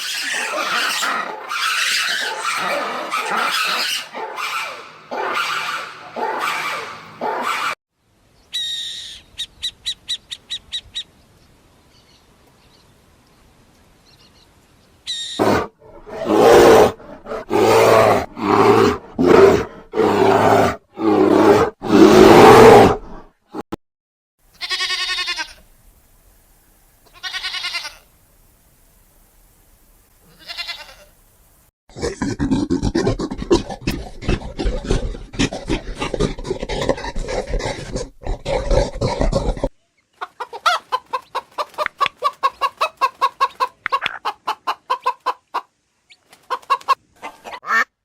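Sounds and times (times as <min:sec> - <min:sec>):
lion roaring: 0:15.4 - 0:23.2, 0:31.9 - 0:39.7.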